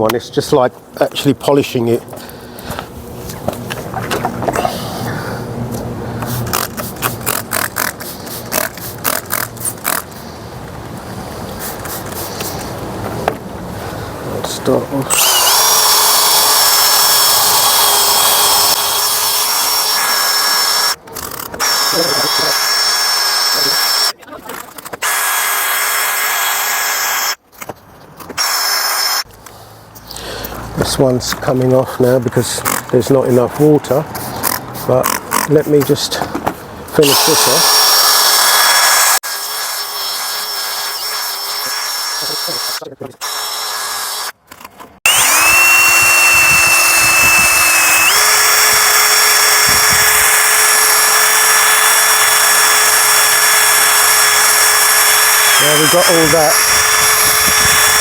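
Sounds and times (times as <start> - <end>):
electric drill sanding with gritty hiss: 15.1 - 21.0, 28.4 - 29.3, 37.0 - 44.4, 45.1 - 58.0.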